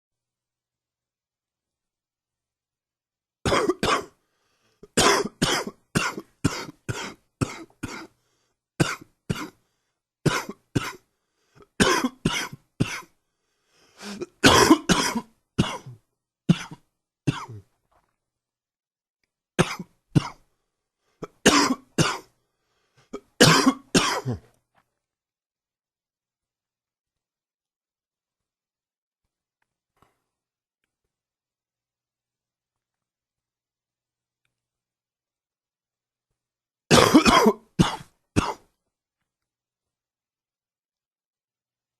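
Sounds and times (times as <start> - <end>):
man coughing: 3.5 - 4.1, 4.9 - 8.1, 10.3 - 11.0, 11.7 - 13.1, 14.0 - 17.6, 19.6 - 20.4, 21.2 - 22.3, 23.2 - 24.5, 36.9 - 38.7.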